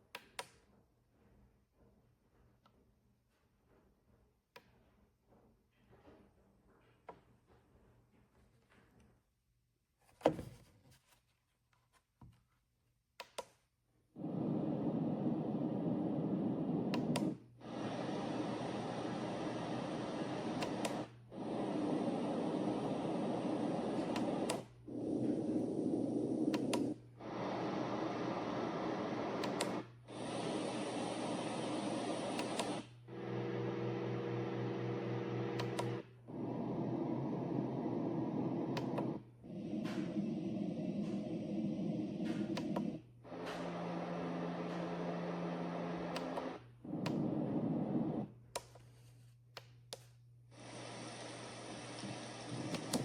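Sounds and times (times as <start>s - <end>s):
white noise from sound machine: 14.2s - 48.3s, 50.5s - 53.0s
steady low hum: 14.2s - 48.5s
sharp clicks: 26.5s - 27.0s, 29.4s - 29.8s.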